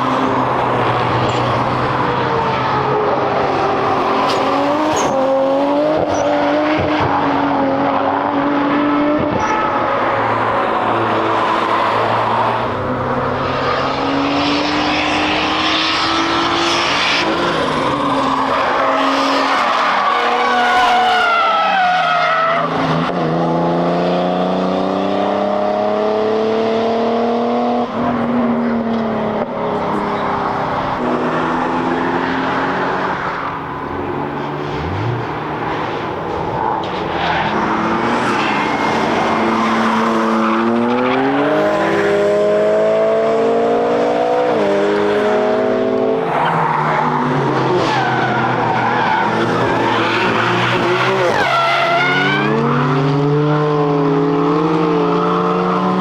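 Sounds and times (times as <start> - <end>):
car engines revving: 0.0 - 56.0
tyre squeal: 4.2 - 5.3, 46.2 - 52.6.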